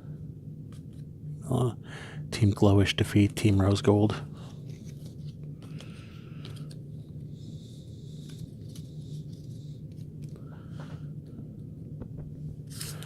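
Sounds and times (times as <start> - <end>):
steady low hum: 0.0 - 13.0
cards and packaging rustling: 4.5 - 6.9, 8.0 - 10.4, 12.6 - 13.0.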